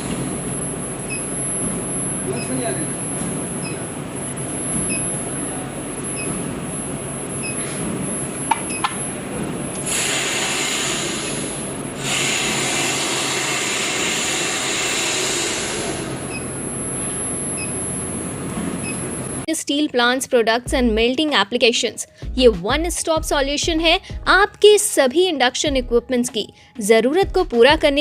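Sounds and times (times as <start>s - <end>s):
industrial machinery noise: 0.0s - 19.5s
loud hiss: 9.8s - 16.2s.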